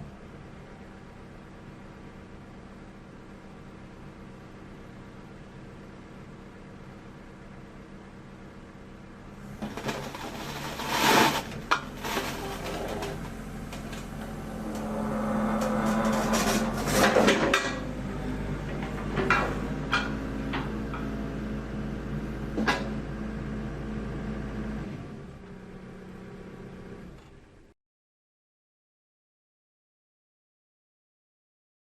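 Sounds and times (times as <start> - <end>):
excavator diesel engine: 0.0 - 27.7
metallic clanks and knocks: 15.5 - 17.9.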